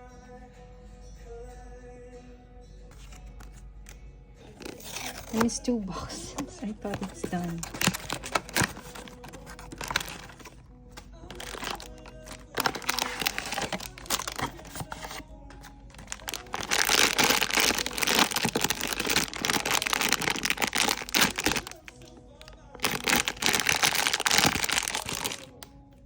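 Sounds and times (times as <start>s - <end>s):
quiet background music: 0.0s - 26.0s
packaging crinkling and tearing: 4.5s - 5.7s, 6.4s - 25.7s.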